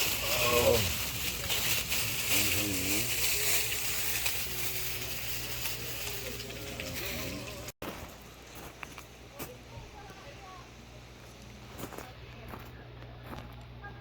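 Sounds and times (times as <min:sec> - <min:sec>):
meat sizzling on a grill: 0:00.0 - 0:07.8
faint crackles: 0:00.0 - 0:13.7.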